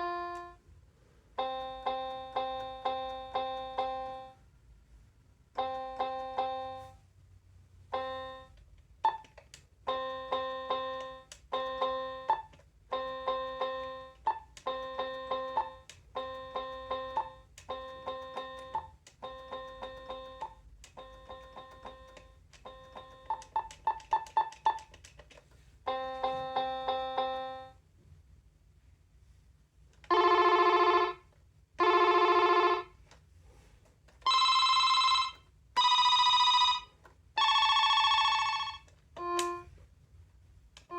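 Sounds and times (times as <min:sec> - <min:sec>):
toy keyboard playing repeated notes: 0:00.0 - 0:00.6, 0:01.4 - 0:04.4, 0:05.6 - 0:07.0, 0:07.9 - 0:27.8, 0:34.2 - 0:39.7.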